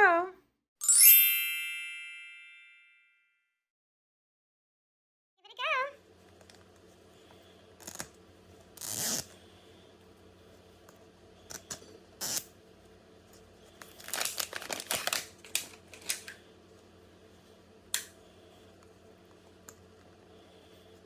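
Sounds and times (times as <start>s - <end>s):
wrapping crinkling: 13.8s - 16.3s.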